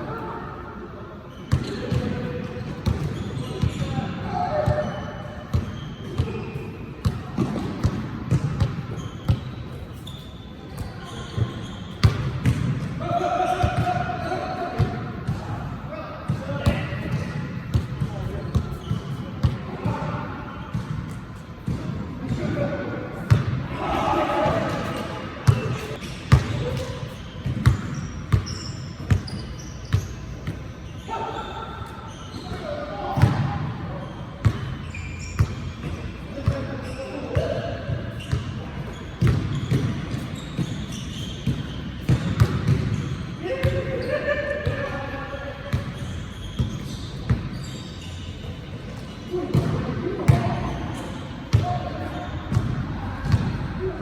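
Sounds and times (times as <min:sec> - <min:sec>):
basketball bouncing on a court: 0:01.4 - 0:04.0, 0:04.6 - 0:10.2, 0:10.8 - 0:13.0, 0:16.3 - 0:20.0, 0:23.3 - 0:23.6, 0:24.5 - 0:30.6, 0:32.1 - 0:33.7, 0:34.4 - 0:34.8, 0:35.4 - 0:43.9, 0:49.5 - 0:50.7, 0:51.5 - 0:53.6
basketball bouncing on hard court: 0:12.0 - 0:12.9, 0:26.3 - 0:26.8, 0:27.4 - 0:30.6, 0:39.2 - 0:43.7.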